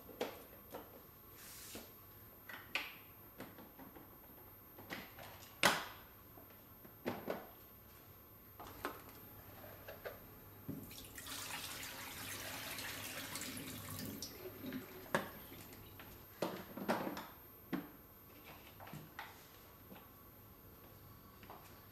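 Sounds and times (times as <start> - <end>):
water pouring: 10.9 - 16.0.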